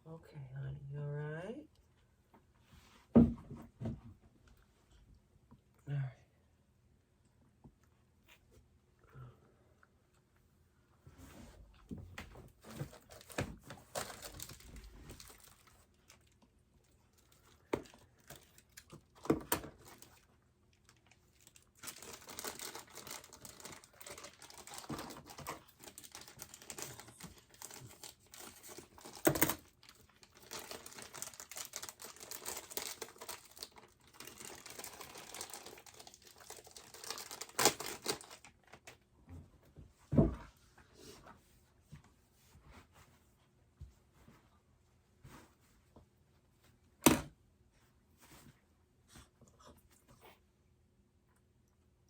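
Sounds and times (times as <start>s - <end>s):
bedding crinkling and rustling: 11.8s - 39.0s.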